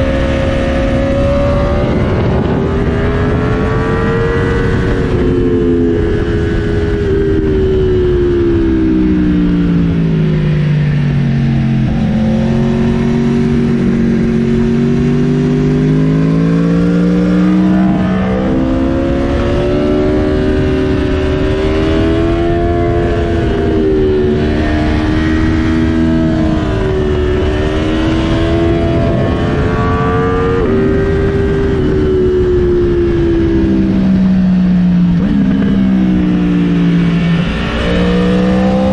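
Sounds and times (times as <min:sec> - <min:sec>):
motorcycle engine revving: 0:00.0 - 0:38.9
wind and road rush: 0:00.0 - 0:38.9.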